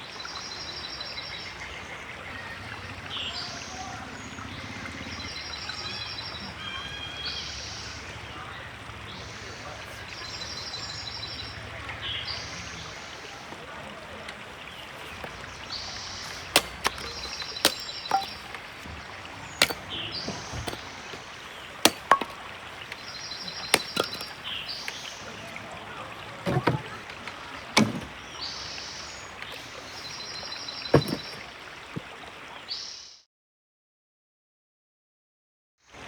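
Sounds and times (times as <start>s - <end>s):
chopping knocks on wood: 16.3s - 18.9s, 19.6s - 25.0s, 26.5s - 28.2s, 30.9s - 31.4s.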